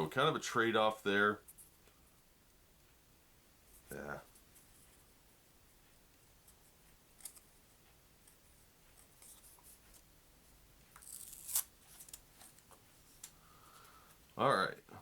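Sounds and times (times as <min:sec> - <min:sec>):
plastic sleeve crinkling and tearing: 0:11.0 - 0:12.2.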